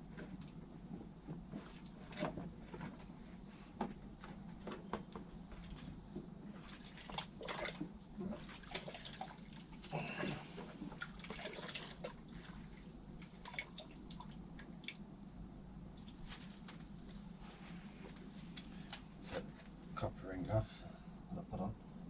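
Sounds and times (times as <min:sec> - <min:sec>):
water splashing and dripping: 0:06.6 - 0:09.9, 0:10.9 - 0:12.2, 0:13.2 - 0:15.1.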